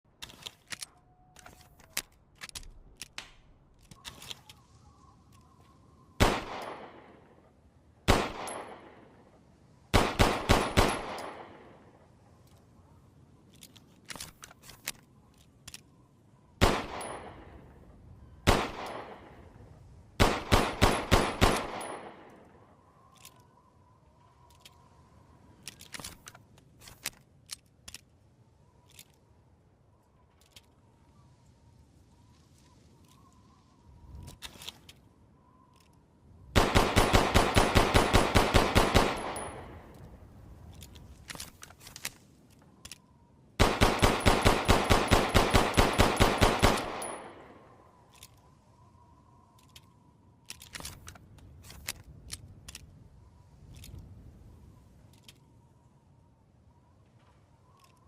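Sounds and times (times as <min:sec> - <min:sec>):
faint clicks: 0:22.1 - 0:36.2, 0:46.8 - 0:55.9, 0:56.9 - 0:58.0
pistol shots echoing: 0:36.6 - 0:39.8, 0:43.6 - 0:47.5.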